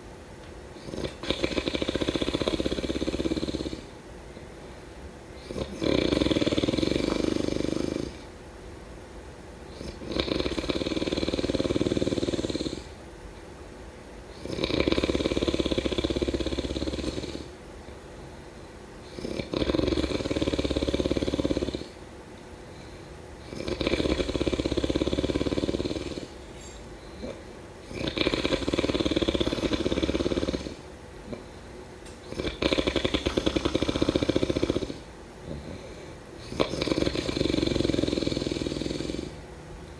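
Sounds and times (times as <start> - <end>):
person snoring: 0.8 - 3.9, 5.4 - 8.3, 9.7 - 13.0, 14.4 - 17.6, 19.1 - 22.0, 23.4 - 31.5, 32.2 - 39.4.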